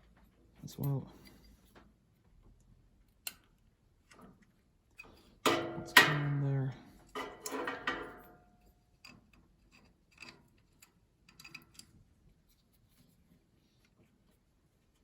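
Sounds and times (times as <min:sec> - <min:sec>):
spanner clicking and scraping metal: 0:09.0 - 0:12.0.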